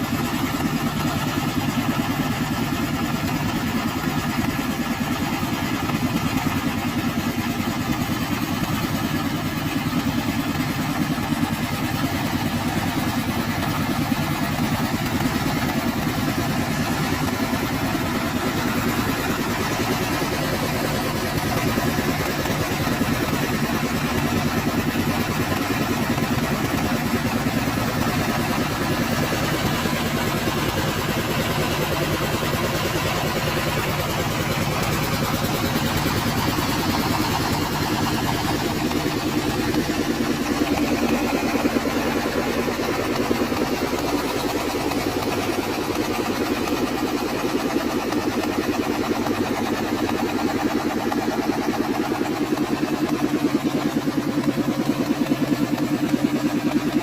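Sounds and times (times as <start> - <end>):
diesel engine running: 0.0 - 57.0.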